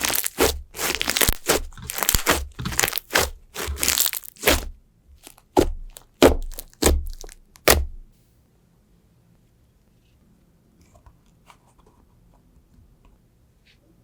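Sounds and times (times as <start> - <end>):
slime squeezed with crunchy crackles: 0.0 - 8.1.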